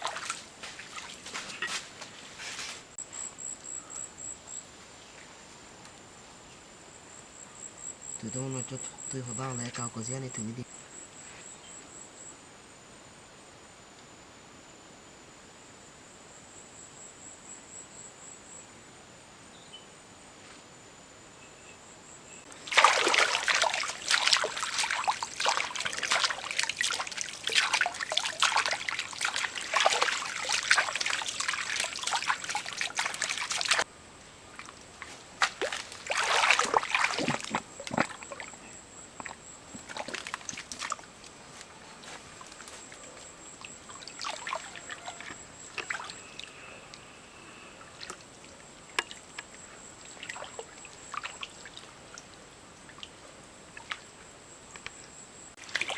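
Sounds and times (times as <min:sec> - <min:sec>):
water splashing and sloshing: 0:00.0 - 0:02.9, 0:22.5 - 0:33.9, 0:34.5 - 0:41.3, 0:42.1 - 0:46.5, 0:47.9 - 0:55.9
crickets chirring: 0:03.0 - 0:55.9.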